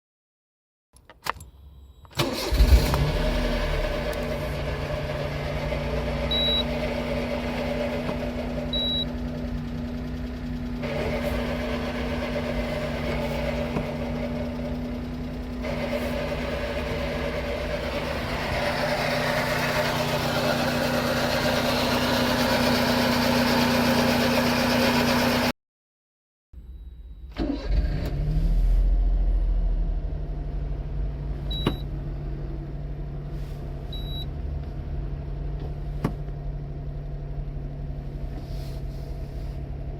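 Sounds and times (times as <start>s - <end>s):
small engine idling: 3.6s - 25.5s.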